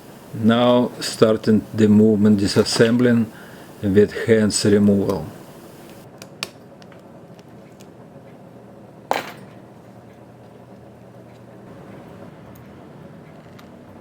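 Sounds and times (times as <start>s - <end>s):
faint low hum: 7.2s - 14.0s.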